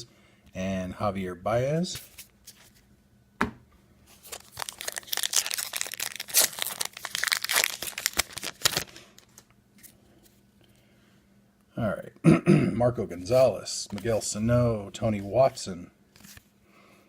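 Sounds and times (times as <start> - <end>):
wrapper tearing and crinkling: 4.1 - 9.4.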